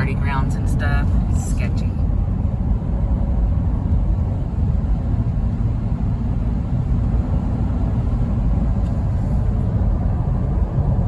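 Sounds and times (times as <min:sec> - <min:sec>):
car road and engine rumble: 0:00.0 - 0:11.0.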